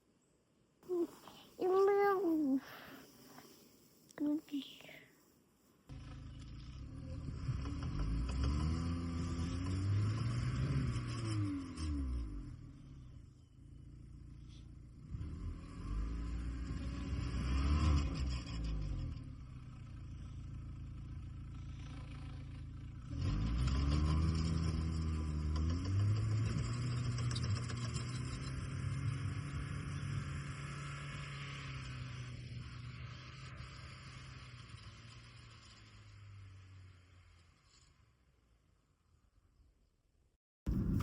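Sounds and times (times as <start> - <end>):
engine revving: 5.9 - 38.0, 40.7 - 41.0.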